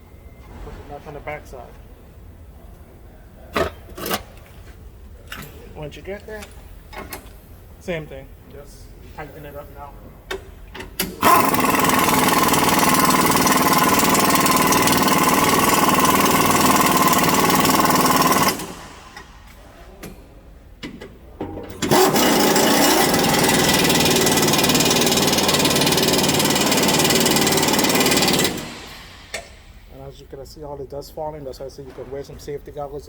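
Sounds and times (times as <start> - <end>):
impact wrench hammering: 11.0 - 19.4, 21.8 - 29.8.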